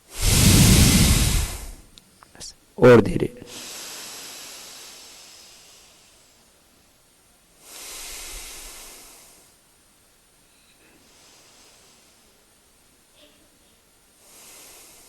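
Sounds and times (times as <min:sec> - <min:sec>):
deep breaths through nose: 0:00.0 - 0:01.9, 0:03.5 - 0:06.6, 0:07.6 - 0:09.7, 0:10.5 - 0:12.5, 0:14.2 - 0:15.0.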